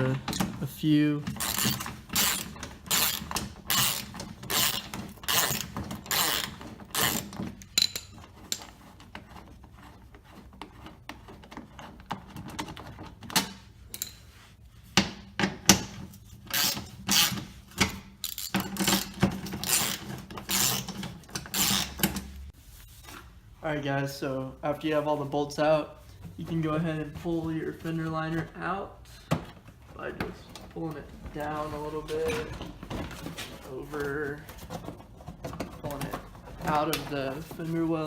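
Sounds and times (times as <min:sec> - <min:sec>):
hand ratchet clicking: 0:01.4 - 0:08.6, 0:16.5 - 0:22.2.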